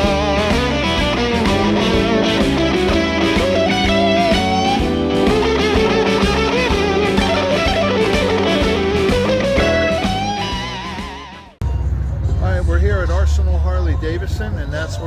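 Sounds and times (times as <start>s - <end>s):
rock music with electric guitar: 0.0s - 11.6s.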